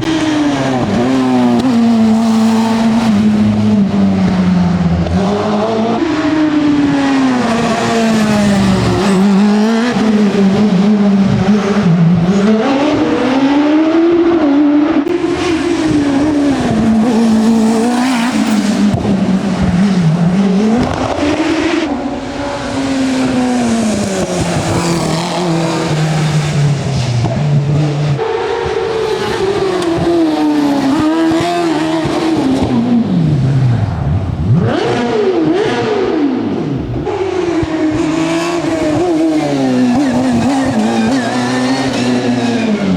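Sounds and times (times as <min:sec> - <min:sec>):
race car engine revving: 0:00.0 - 0:42.9.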